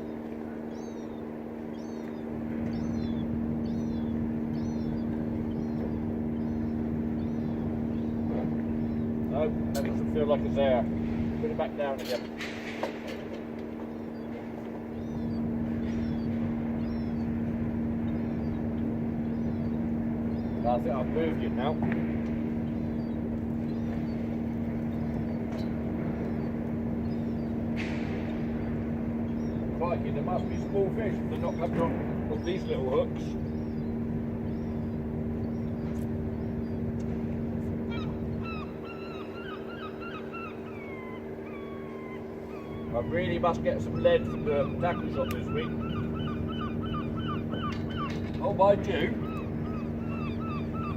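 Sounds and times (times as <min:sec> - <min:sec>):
faint bird calls: 0:00.0 - 0:50.9
ferry engines droning: 0:00.0 - 0:50.9
low machinery hum: 0:00.0 - 0:50.9
bird calling in short cries: 0:37.8 - 0:50.9.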